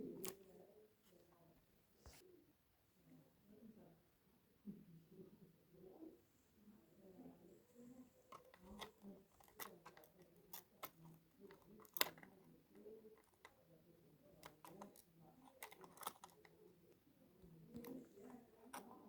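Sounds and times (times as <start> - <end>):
faint voices: 4.6 - 19.0
small hard parts clicking: 8.3 - 12.4, 14.4 - 16.6.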